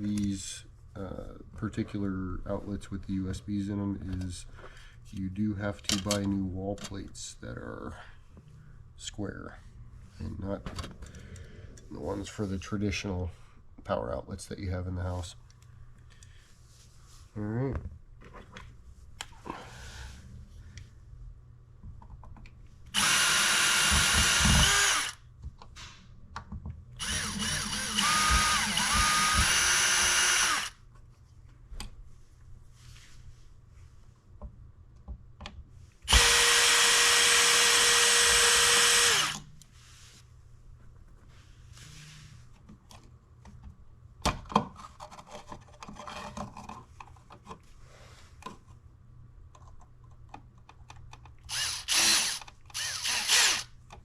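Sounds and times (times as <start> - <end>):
electric drill-driver running: 23.0 - 25.2, 27.0 - 30.8, 36.1 - 39.4, 51.5 - 53.7.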